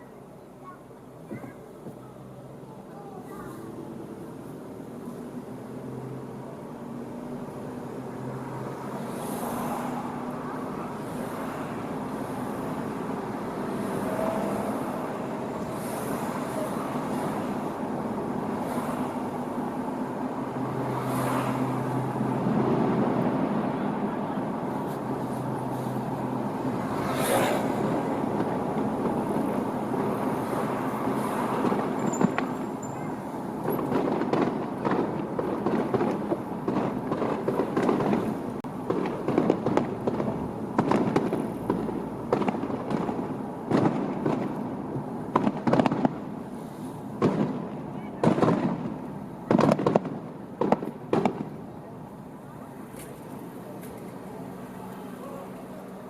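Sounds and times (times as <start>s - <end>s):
traffic passing: 0.0s - 56.0s
fireworks popping and banging: 27.1s - 51.8s.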